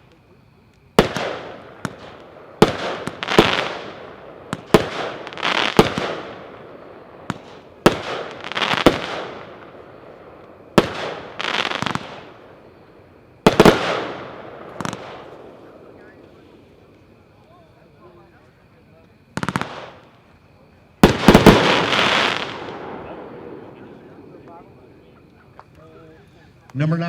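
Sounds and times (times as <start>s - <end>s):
firework cake firing shots: 1.0s - 6.5s, 7.2s - 9.6s, 10.8s - 12.4s, 13.4s - 15.4s, 19.3s - 20.1s, 21.0s - 24.2s.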